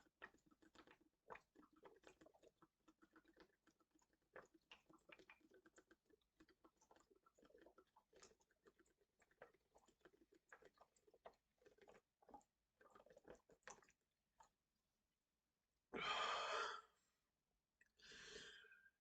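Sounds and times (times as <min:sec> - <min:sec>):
man gulping soda: 0:00.0 - 0:14.6, 0:16.0 - 0:17.0.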